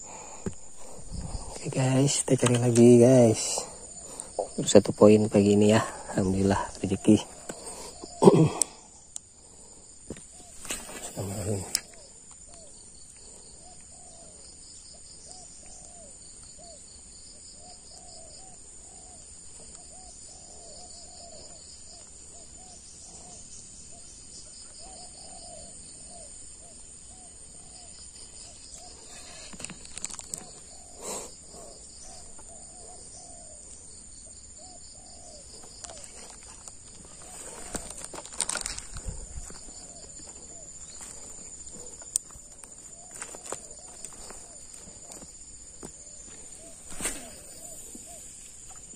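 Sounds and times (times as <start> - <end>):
high insect drone: 0.0 - 48.9.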